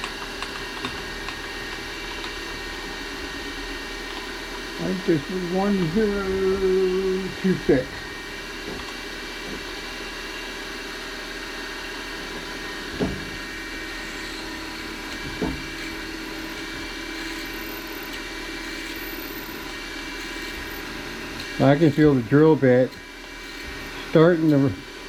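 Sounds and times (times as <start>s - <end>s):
drill bit drilling into metal: 0.0s - 25.0s.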